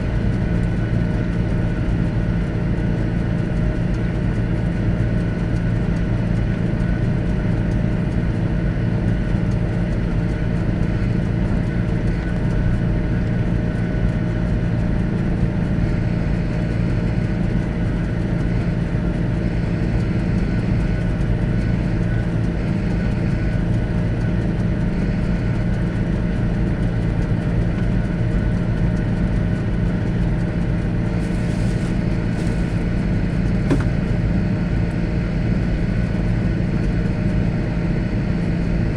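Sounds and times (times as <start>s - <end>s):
tractor diesel engine running: 0.0s - 38.6s
brief click: 33.7s - 34.0s.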